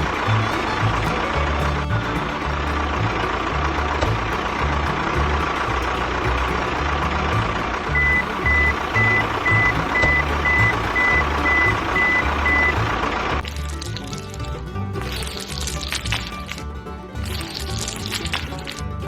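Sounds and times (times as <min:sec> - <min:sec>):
background music with bass beat: 0:00.0 - 0:19.0
truck engine: 0:00.0 - 0:19.0
vehicle reversing alarm beeping: 0:07.9 - 0:13.1.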